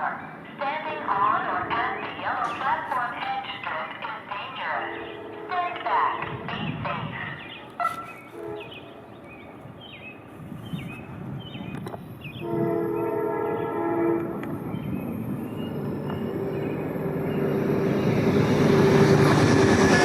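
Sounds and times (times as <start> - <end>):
train rumbling: 0.0 - 20.0
train air horn: 7.8 - 8.8, 12.4 - 14.4.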